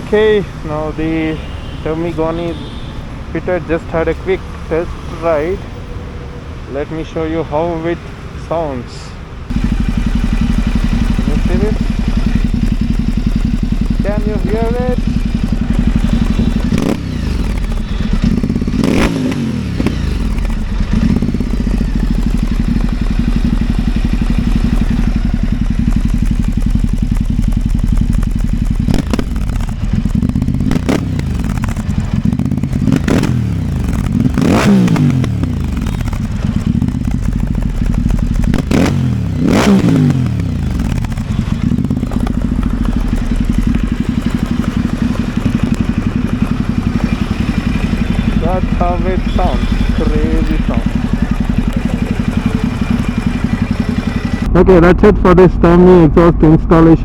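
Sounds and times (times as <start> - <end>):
motorcycle engine idling: 0.0 - 56.0.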